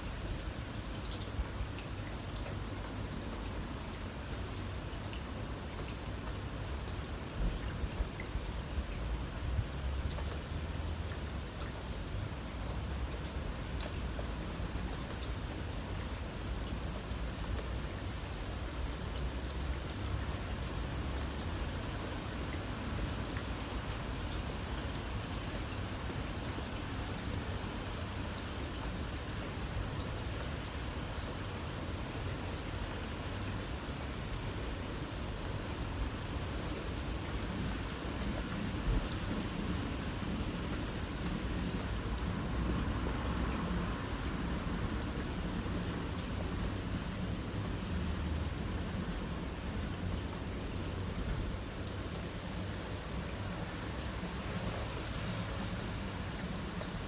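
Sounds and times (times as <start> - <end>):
insects trilling: 0.0 - 54.9
light rain hissing: 0.0 - 57.0.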